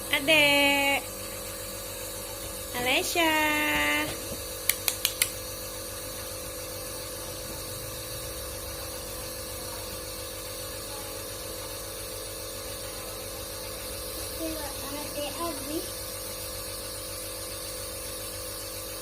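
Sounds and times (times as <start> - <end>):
nebuliser compressor humming: 0.0 - 19.0
quick clicks: 4.7 - 5.4.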